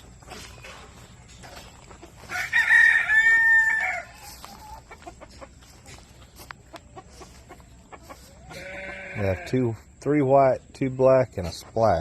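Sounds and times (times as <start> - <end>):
rooster crowing: 2.3 - 4.3.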